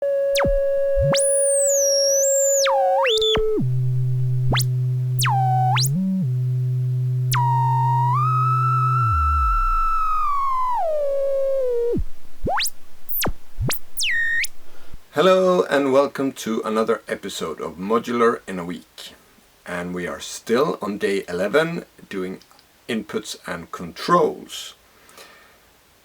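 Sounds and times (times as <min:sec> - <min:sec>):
synthesizer tones gliding in pitch: 0:00.0 - 0:14.6
low synthesizer drone: 0:00.0 - 0:15.0.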